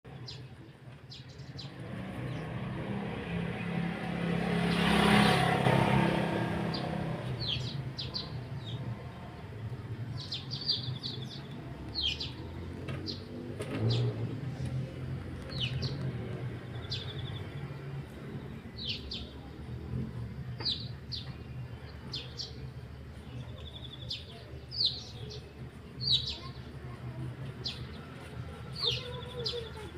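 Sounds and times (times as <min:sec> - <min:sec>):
birds chirping: 0:00.1 - 0:29.9
vehicle passing: 0:01.4 - 0:29.9.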